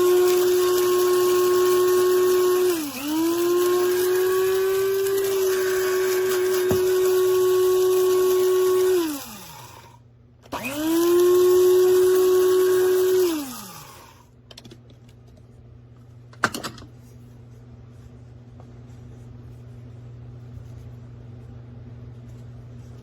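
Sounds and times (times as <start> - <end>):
coffee grinder motor: 0.0 - 14.2.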